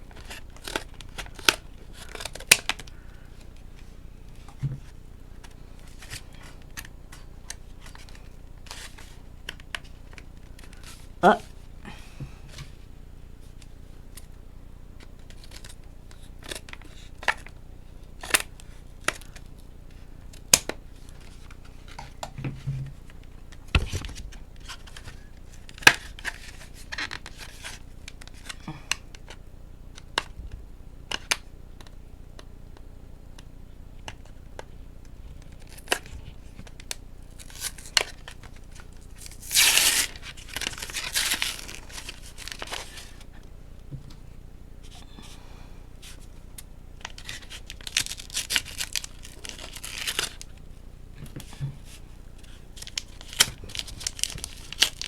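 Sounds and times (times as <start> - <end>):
packaging tearing: 0.2 - 3.2, 37.4 - 43.2, 47.0 - 50.5, 52.4 - 55.0.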